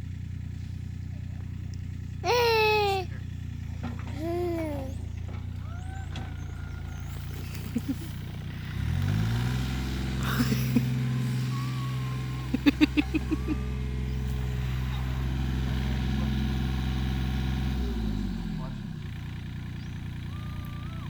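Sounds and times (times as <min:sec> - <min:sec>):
excavator engine revving: 0:00.0 - 0:21.0.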